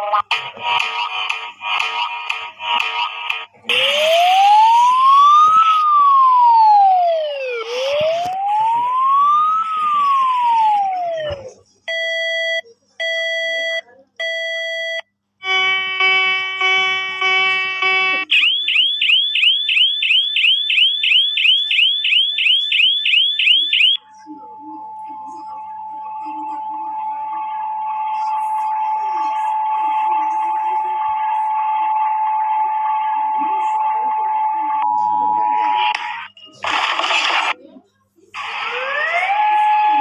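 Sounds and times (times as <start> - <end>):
electronic siren wail: 3.6 - 11.5, 15.4 - 24.0, 38.4 - 40.0.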